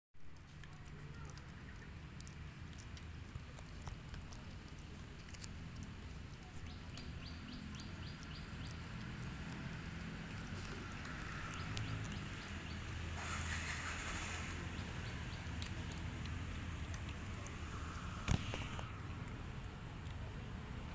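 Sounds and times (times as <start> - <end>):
faint clicks: 0.3 - 20.3
bird chirping: 6.5 - 9.3, 10.6 - 15.6.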